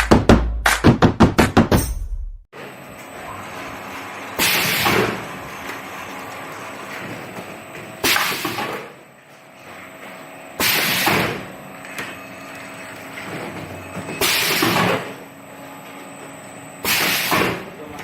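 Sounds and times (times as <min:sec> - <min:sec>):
cup sealer machine running: 0:02.6 - 0:17.8
loud machine bursts: 0:03.3 - 0:06.8, 0:10.6 - 0:11.5, 0:16.8 - 0:17.7.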